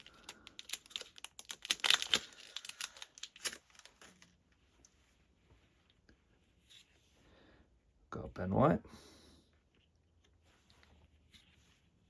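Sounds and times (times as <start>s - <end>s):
cards being handled: 0.0s - 4.4s
foil wrapper tearing and crinkling: 0.0s - 4.4s.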